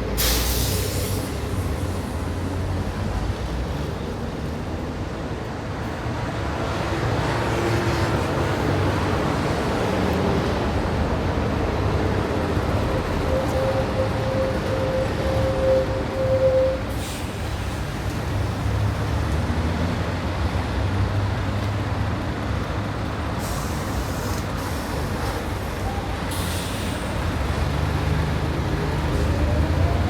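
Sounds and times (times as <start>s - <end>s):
street traffic: 0.0s - 30.0s
sustained single tone: 13.3s - 16.8s.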